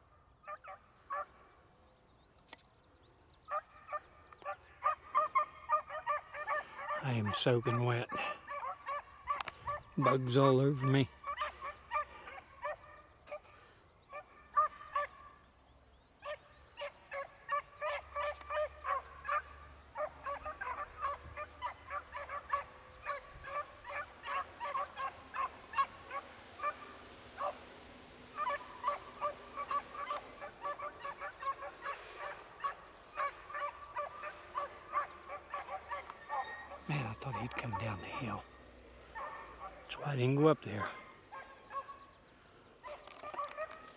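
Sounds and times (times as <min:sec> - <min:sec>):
dogs baying and yelping: 0:03.5 - 0:13.5, 0:16.2 - 0:27.6, 0:28.4 - 0:38.4, 0:39.1 - 0:40.0.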